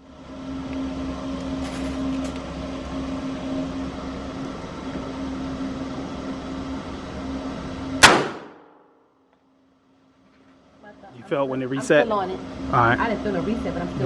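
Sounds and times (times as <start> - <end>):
steady droning hum: 0.0 - 14.0
sharp gunshot with echo: 8.0 - 8.8.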